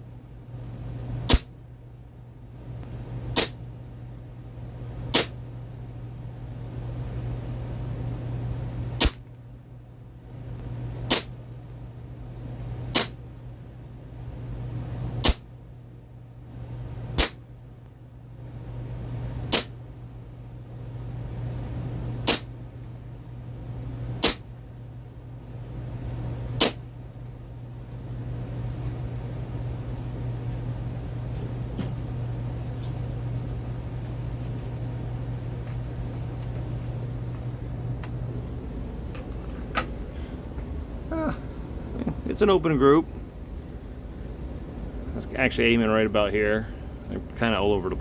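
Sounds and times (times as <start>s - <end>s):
steady low hum: 0.0s - 48.0s
airsoft pistol shots: 1.3s - 1.5s, 3.4s - 3.6s, 5.1s - 5.4s, 9.0s - 9.2s, 11.1s - 11.3s, 12.9s - 13.2s, 15.2s - 15.5s, 17.2s - 17.4s, 19.5s - 19.7s, 22.2s - 22.5s, 24.2s - 24.5s, 26.6s - 26.8s.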